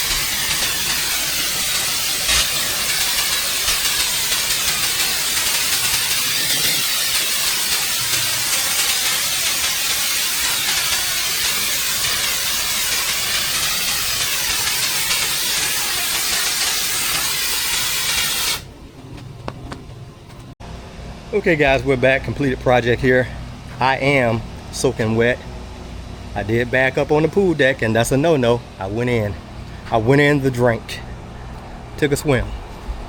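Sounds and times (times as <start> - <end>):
pressure washer spraying water: 0.0 - 20.6.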